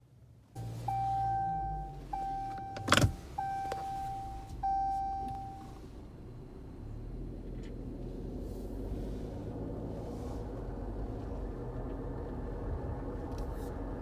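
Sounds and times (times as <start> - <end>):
car warning chime: 0.6 - 5.8.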